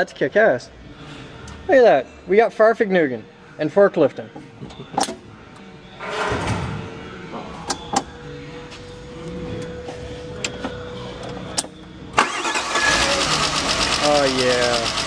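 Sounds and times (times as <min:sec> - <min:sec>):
forklift engine running: 0:08.8 - 0:15.0.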